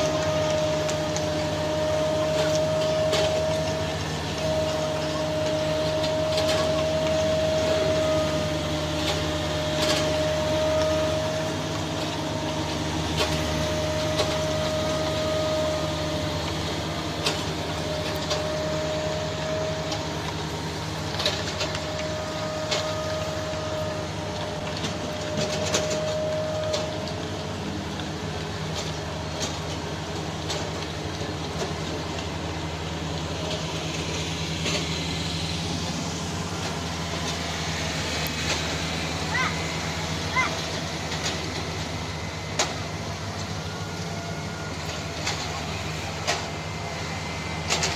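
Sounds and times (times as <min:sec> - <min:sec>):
heavy machinery engine running: 0:00.0 - 0:47.9.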